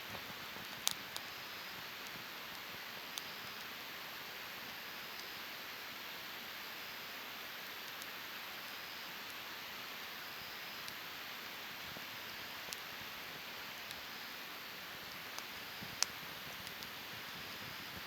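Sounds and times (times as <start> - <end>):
fire crackling pops: 0.0 - 5.3, 7.6 - 8.2, 10.8 - 18.0
campfire hissing: 0.0 - 18.0.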